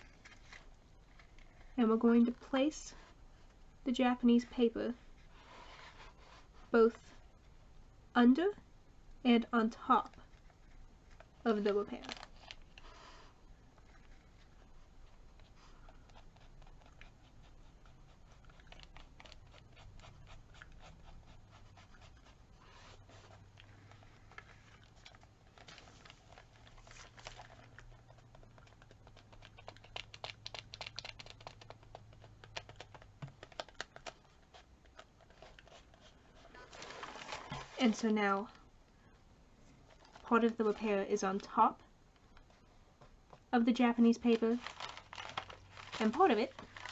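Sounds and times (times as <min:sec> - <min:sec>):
paper rustling and scratching: 0:00.0 - 0:01.8, 0:21.5 - 0:38.1, 0:44.2 - 0:46.9.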